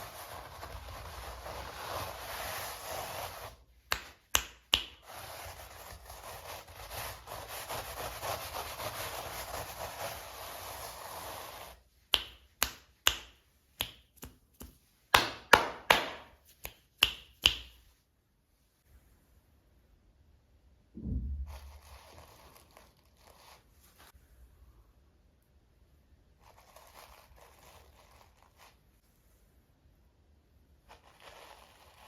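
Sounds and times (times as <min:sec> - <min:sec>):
hands rubbing packaging: 0:00.0 - 0:17.7.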